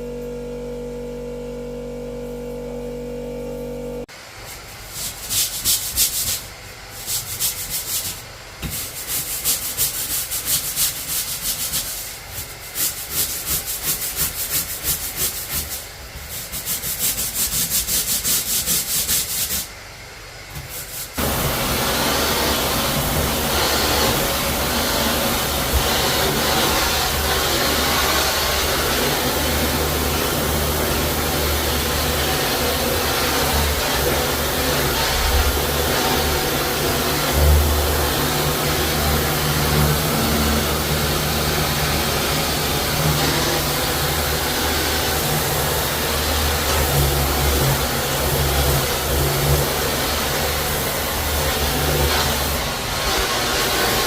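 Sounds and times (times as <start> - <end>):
scrubbing on a tile floor: 4.4 - 19.7, 20.5 - 54.0
motor humming: 21.2 - 54.0.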